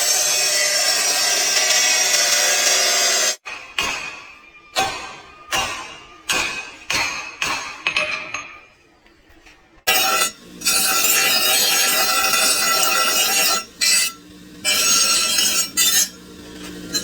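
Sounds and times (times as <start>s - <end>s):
hammer striking iron: 3.4s - 8.7s.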